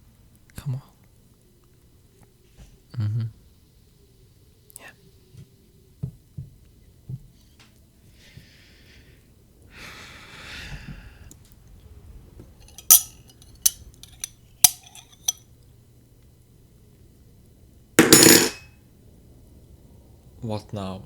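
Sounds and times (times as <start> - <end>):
cutlery clinking against a dish: 12.7 - 15.4, 18.0 - 18.7.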